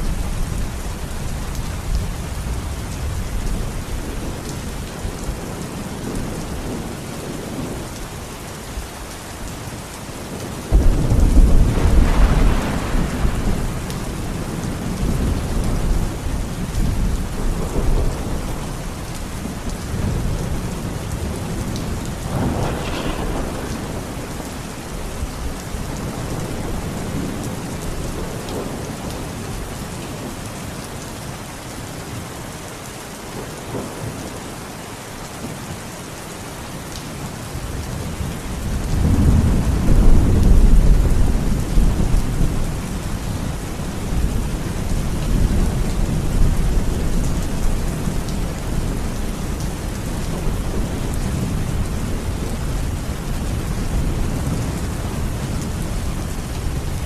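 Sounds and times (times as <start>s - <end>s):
steady rain: 0.0s - 57.0s
thunder rumbling: 10.6s - 29.3s, 37.7s - 57.0s.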